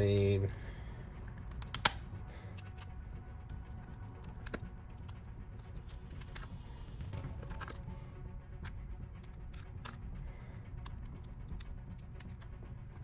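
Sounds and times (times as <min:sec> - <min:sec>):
hand tools clicking and tapping: 0:01.5 - 0:06.5, 0:08.6 - 0:10.0, 0:10.8 - 0:12.6.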